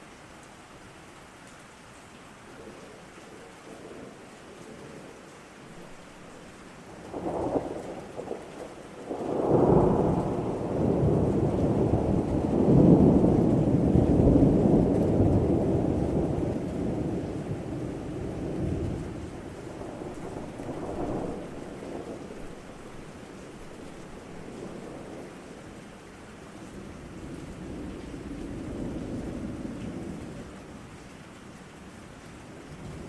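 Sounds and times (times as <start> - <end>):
steady rain: 0.0 - 33.0
thunder rolling: 6.9 - 25.5.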